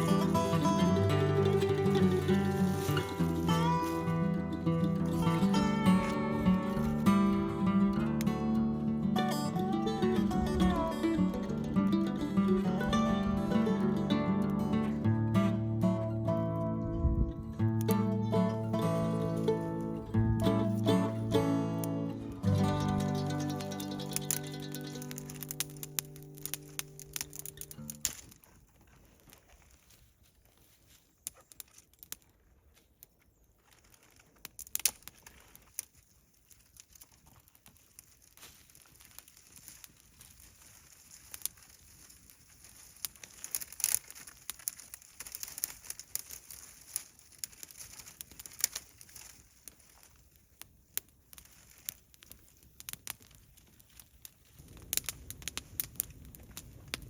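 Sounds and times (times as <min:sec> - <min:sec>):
dry leaves and twigs crackling: 0:00.0 - 0:15.4, 0:17.7 - 0:57.0
twigs snapping: 0:23.0 - 0:57.0.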